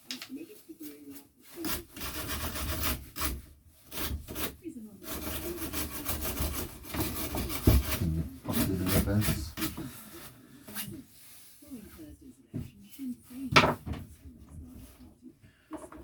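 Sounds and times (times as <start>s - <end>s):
hand tool scraping hard surface: 1.5s - 10.8s.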